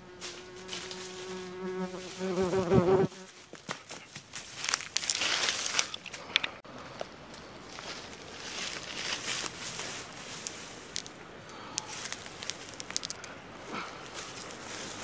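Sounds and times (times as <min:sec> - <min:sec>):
fly buzzing: 0:00.0 - 0:03.4
rustling or crinkling: 0:00.2 - 0:02.4, 0:03.2 - 0:15.0.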